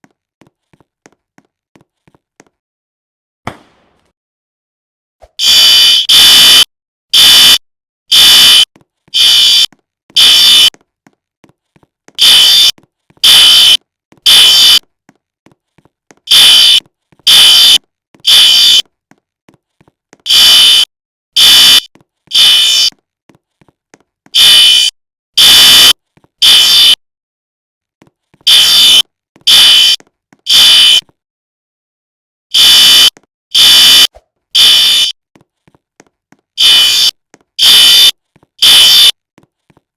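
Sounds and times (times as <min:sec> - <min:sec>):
fire alarm sounder blasts: 0:05.4 - 0:10.7, 0:12.2 - 0:14.8, 0:16.3 - 0:18.8, 0:20.3 - 0:22.9, 0:24.4 - 0:27.0, 0:28.5 - 0:31.1, 0:32.5 - 0:35.2, 0:36.6 - 0:39.2.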